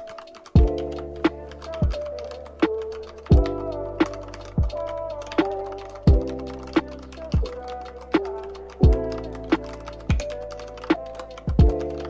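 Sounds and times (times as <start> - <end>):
deep kick drum: 3.3 - 3.5, 6.1 - 6.3, 11.5 - 11.8.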